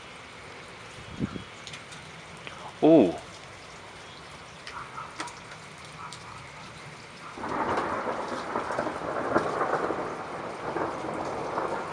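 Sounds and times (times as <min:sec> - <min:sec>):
heavy rain: 0:00.0 - 0:11.9
thunder rumbling: 0:07.4 - 0:11.9.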